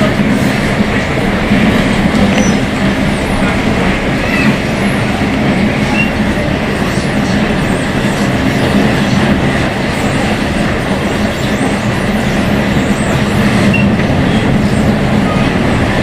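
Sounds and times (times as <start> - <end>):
wheels rumbling on track: 0.0 - 16.0.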